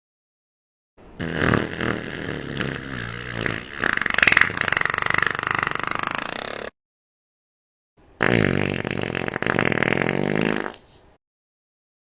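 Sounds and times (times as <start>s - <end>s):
fart sound effect: 1.2s - 6.8s, 8.2s - 11.0s.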